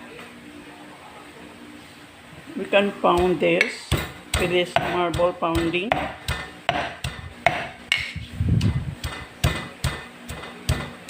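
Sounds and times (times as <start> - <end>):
pestle pounding leaves: 3.1 - 11.0.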